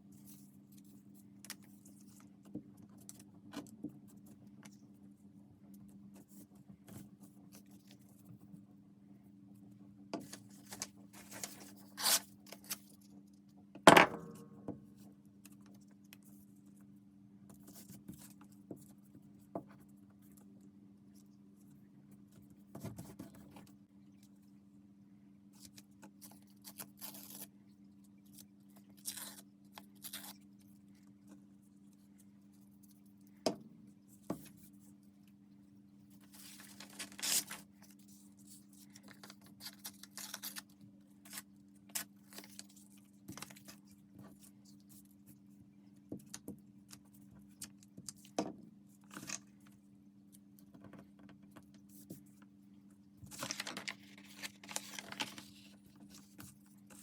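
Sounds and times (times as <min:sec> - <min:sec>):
paper rustling and scraping: 0:10.2 - 0:13.0, 0:36.2 - 0:40.7, 0:53.2 - 0:57.0.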